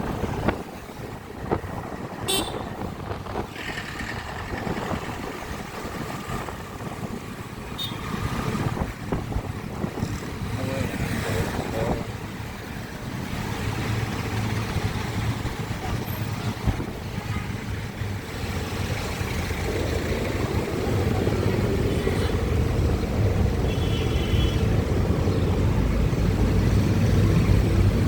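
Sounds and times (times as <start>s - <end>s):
wind buffeting microphone: 0.0s - 17.2s
vehicle horn: 2.3s - 2.8s, 23.7s - 24.6s.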